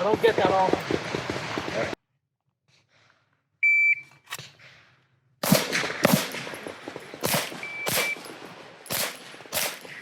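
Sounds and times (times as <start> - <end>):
shot timer beep: 3.6 - 4.1, 7.6 - 8.2
handgun shots: 5.4 - 6.6, 7.2 - 10.0.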